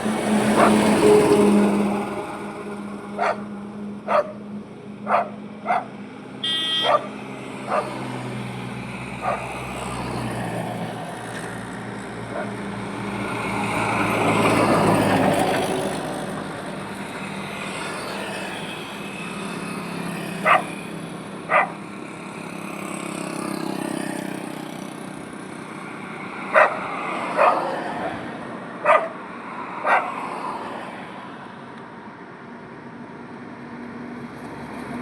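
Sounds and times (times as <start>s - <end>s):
vehicles passing: 0.0s - 35.0s
dog barking: 0.5s - 0.9s, 3.2s - 3.4s, 4.1s - 4.4s, 5.1s - 5.9s, 6.7s - 7.1s, 7.7s - 8.0s, 9.2s - 9.6s, 12.3s - 12.5s, 20.4s - 20.7s, 21.5s - 21.8s, 26.5s - 28.2s, 28.8s - 29.2s, 29.8s - 30.2s.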